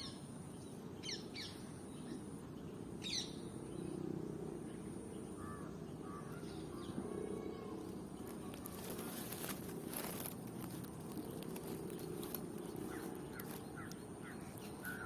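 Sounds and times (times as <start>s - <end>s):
small bird chirps: 5.4s - 15.0s
rustles or clicks: 8.2s - 15.0s.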